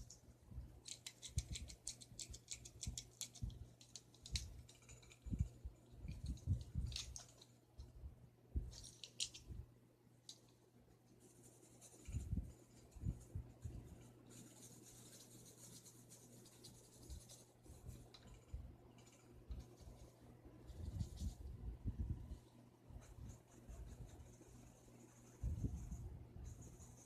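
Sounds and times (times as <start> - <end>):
pencil scratching on paper: 13.9 - 21.4, 23.0 - 27.0.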